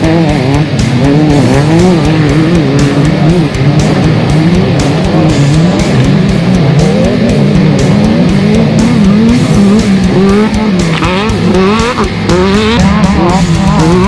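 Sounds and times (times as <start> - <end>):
buggy engine revving: 0.0 - 14.0
rock music: 0.0 - 14.0.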